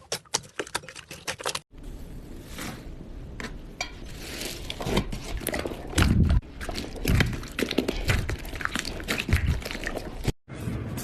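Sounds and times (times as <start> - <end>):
wet squishing of slime: 4.6 - 10.4.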